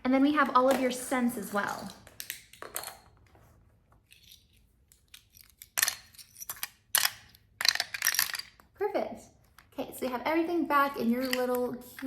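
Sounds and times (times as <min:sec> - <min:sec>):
plastic toy coins clattering: 0:05.2 - 0:08.6.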